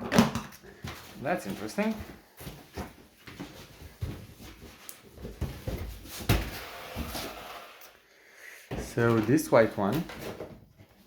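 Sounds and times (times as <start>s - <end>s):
cardboard boxes scraping and rustling: 5.3s - 8.0s.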